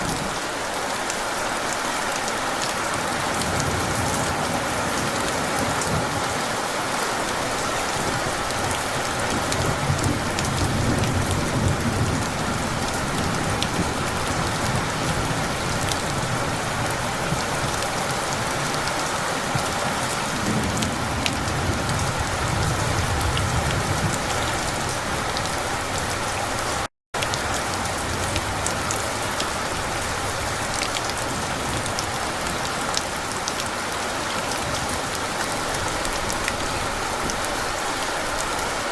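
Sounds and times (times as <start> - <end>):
heavy rain pattering: 0.0 - 38.9
distant thunder rumbling: 7.3 - 26.8.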